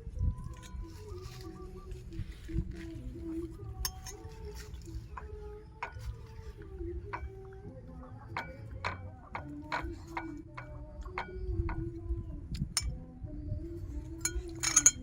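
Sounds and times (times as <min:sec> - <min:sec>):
utensil clinking on dish: 0:03.8 - 0:07.4, 0:08.3 - 0:11.8, 0:14.1 - 0:15.0.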